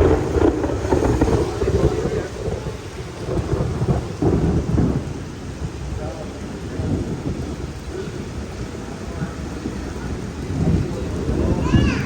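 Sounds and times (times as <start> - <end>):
low uneven rumbling: 0.0 - 12.0
rain: 0.0 - 12.0.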